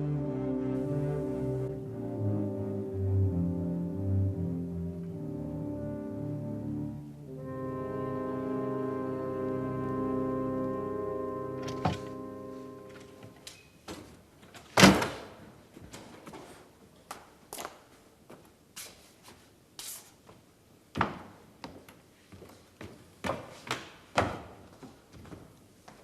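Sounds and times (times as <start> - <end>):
held brass chord: 0.0 - 13.4.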